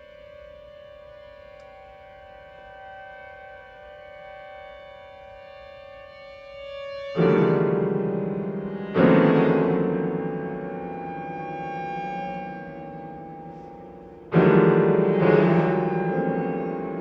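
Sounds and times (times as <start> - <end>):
loud struck piano chords: 7.2 - 17.0
quiet held high tones: 7.2 - 17.0.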